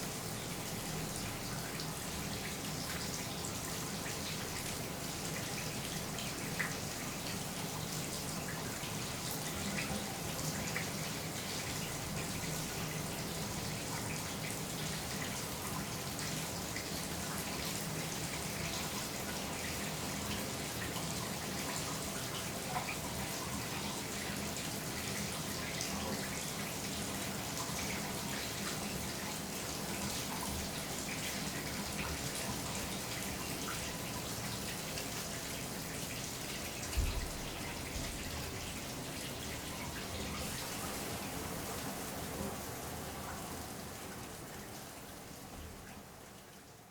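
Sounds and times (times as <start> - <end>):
water splashing and dripping: 29.4 - 42.6.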